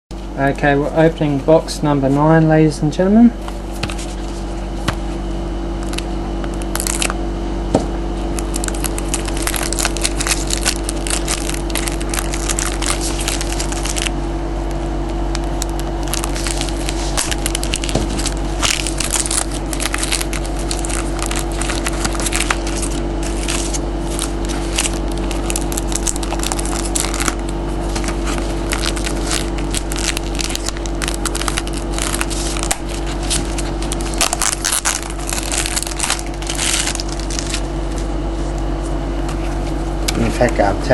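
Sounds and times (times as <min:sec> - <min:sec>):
low electrical hum: 0:00.1 - 0:40.9
plastic wrapping crackling: 0:05.8 - 0:07.2, 0:08.3 - 0:14.1, 0:15.0 - 0:38.0.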